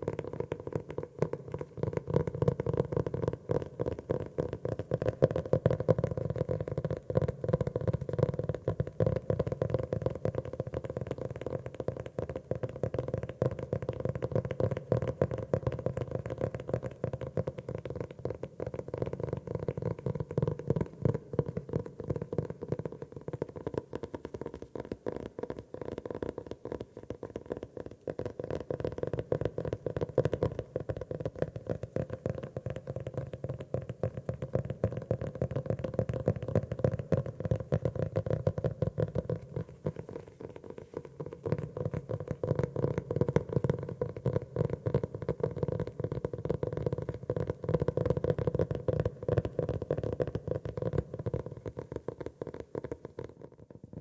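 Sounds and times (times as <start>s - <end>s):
rapid tapping on a notebook: 0.0s - 54.0s.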